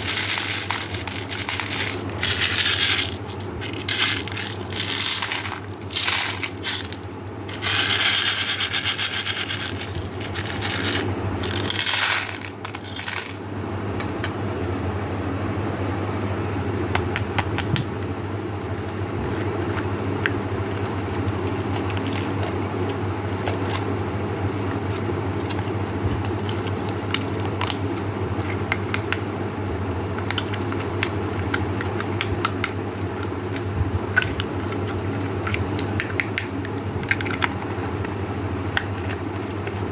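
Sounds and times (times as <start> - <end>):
candy pieces ticking: 0.0 - 13.4
hard candy pouring and clattering: 0.0 - 13.4
steady low hum: 0.0 - 39.9.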